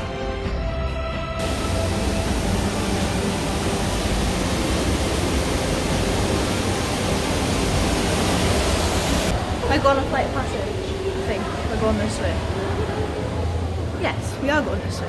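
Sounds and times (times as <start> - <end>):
waterfall rushing: 1.4 - 15.0.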